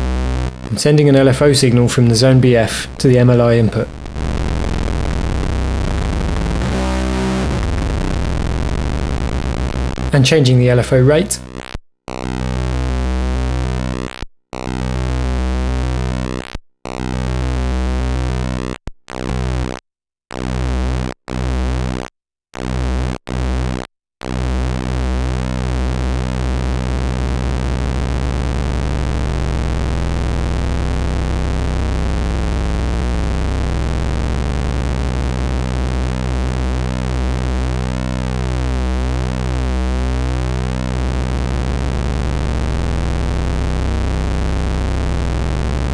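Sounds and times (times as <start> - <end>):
low buzzing oscillator tone: 2.8 - 10.1, 25.4 - 45.9.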